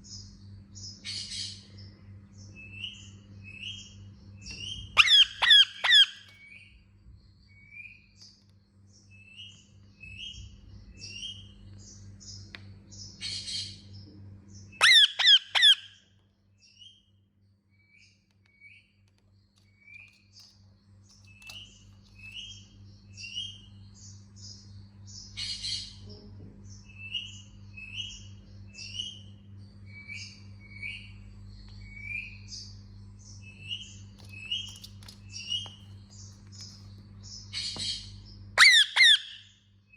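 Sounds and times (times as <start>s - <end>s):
parakeet chirping: 4.7s - 6.3s, 14.8s - 16.0s, 33.3s - 39.6s
harsh parakeet squawks: 5.0s - 6.3s, 14.8s - 16.0s, 38.6s - 39.5s
raspy noisy calls: 5.0s - 6.3s, 14.8s - 16.0s, 38.6s - 39.6s.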